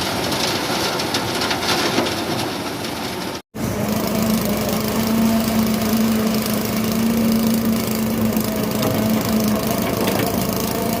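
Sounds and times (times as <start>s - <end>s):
rattly mechanical noise: 0.0s - 11.0s
construction machinery engine running: 3.5s - 11.0s.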